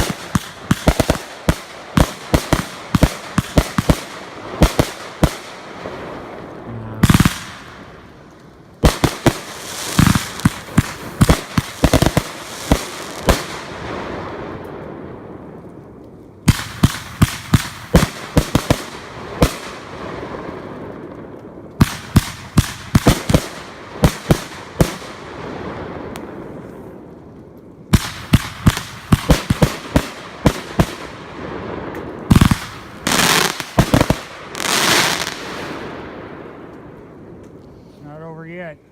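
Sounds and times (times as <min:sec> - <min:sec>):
fireworks banging: 0:00.0 - 0:13.7, 0:27.9 - 0:36.8
fireworks crackle: 0:00.0 - 0:38.7.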